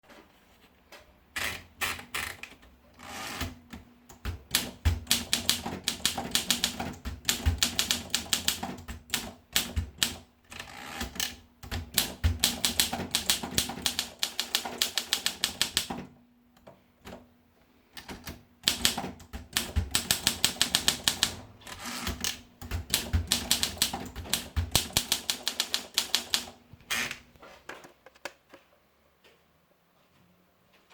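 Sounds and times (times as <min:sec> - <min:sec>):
manual typewriter typing: 0:01.4 - 0:16.2, 0:18.0 - 0:27.2.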